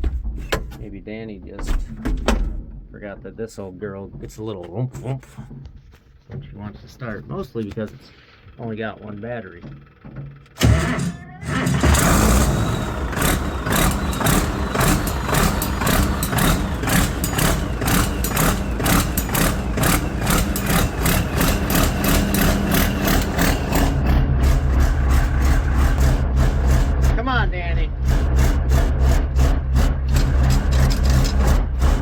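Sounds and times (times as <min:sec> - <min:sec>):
tractor engine starting and running: 0:07.5 - 0:32.0.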